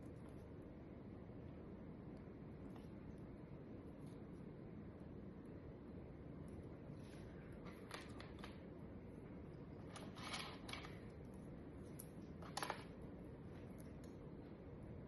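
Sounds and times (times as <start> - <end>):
light clicks of small parts: 9.5 - 14.5.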